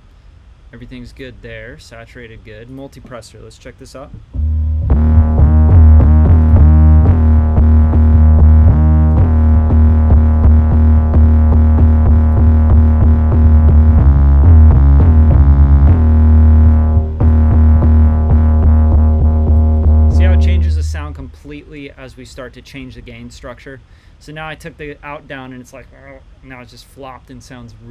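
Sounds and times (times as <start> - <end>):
distorted synth bass notes: 4.3 - 21.3
electronic beat: 4.4 - 21.2.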